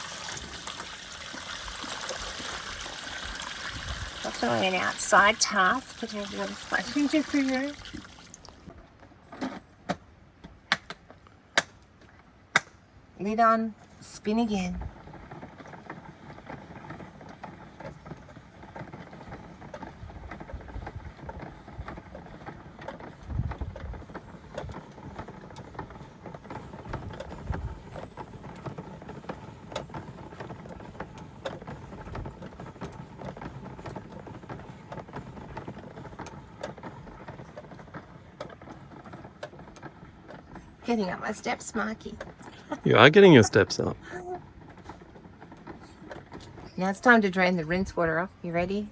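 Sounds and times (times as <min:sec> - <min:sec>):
washing machine drum churning: 0:00.0 - 0:08.7.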